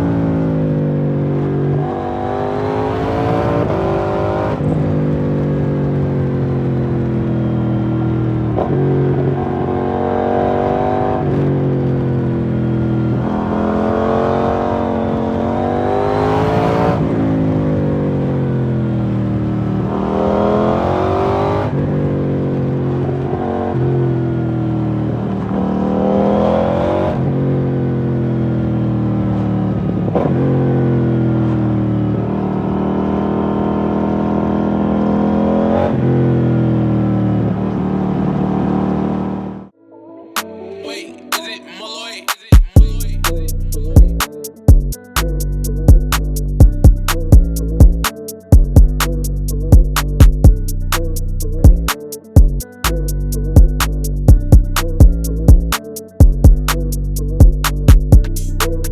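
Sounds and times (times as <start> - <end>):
motorcycle engine revving: 0.0 - 39.7, 56.4 - 58.9.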